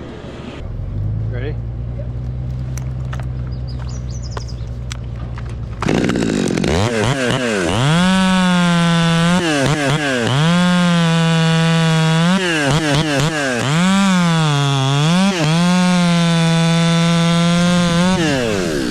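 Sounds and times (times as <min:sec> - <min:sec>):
chainsaw running: 0:04.7 - 0:18.9.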